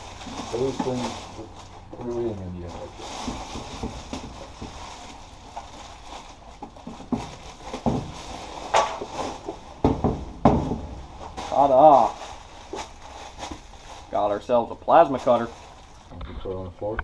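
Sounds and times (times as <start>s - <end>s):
packaging rustling: 0.0s - 16.1s
loud thumps: 6.7s - 13.6s.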